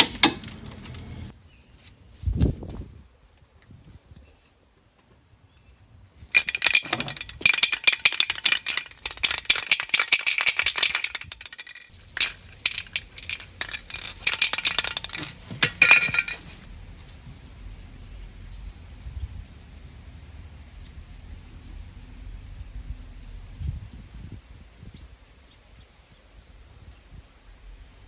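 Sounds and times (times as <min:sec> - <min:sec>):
metal tools rattling and clinking: 0:06.4 - 0:16.4.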